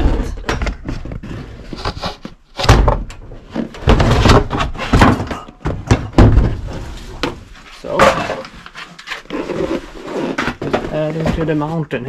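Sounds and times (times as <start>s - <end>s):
heavy thuds of objects set down: 2.6s - 8.5s.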